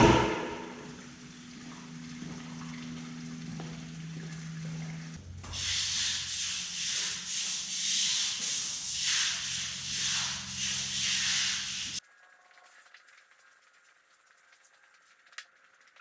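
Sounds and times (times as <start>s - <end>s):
push broom scrubbing concrete: 5.5s - 12.0s.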